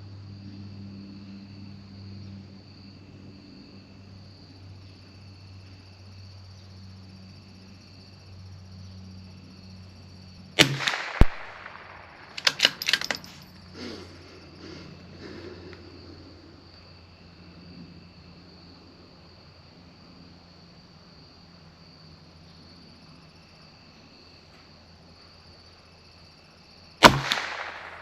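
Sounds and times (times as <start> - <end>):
rifle shots: 10.6 - 13.4, 27.0 - 28.0
rifle bolt metallic clicks: 10.6 - 13.5, 27.0 - 28.0.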